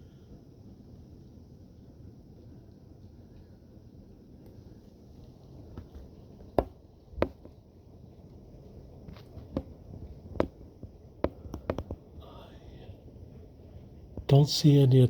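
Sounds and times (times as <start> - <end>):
low steady rumble: 0.0 - 15.0
sharp irregular taps: 6.6 - 7.5, 10.4 - 10.6, 11.2 - 12.0.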